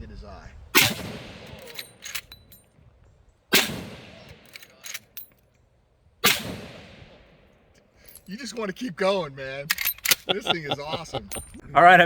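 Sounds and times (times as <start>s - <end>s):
rifle lever metallic clacks: 0.8s - 2.6s, 3.6s - 5.4s, 9.7s - 10.3s
rifle shots echoing: 0.8s - 2.6s, 3.5s - 5.2s, 6.2s - 7.5s.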